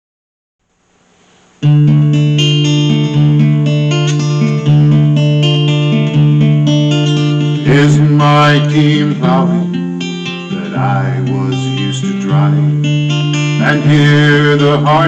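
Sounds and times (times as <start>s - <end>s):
faint hiss: 0.6s - 3.3s
guitar playing minor chords: 1.4s - 15.0s.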